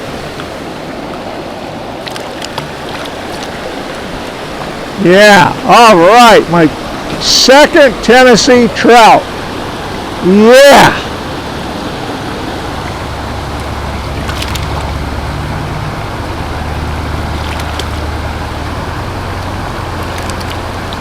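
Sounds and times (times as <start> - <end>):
fast-flowing creek rushing: 0.0 - 21.0
faint ticks: 19.4 - 21.0.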